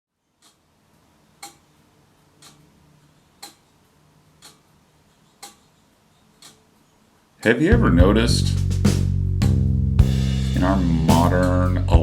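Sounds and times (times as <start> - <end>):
analog clock ticking: 0.4 - 0.6, 1.4 - 2.8, 3.4 - 3.7, 4.4 - 4.8, 5.4 - 5.7, 6.4 - 6.7.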